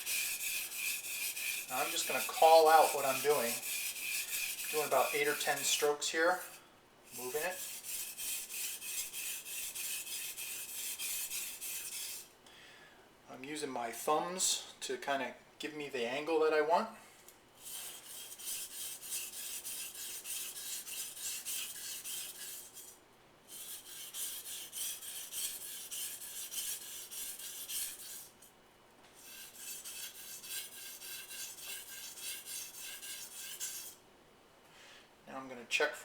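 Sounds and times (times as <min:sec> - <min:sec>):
knife scraping on whetstone: 0:00.0 - 0:12.3, 0:17.6 - 0:28.3, 0:29.2 - 0:34.0.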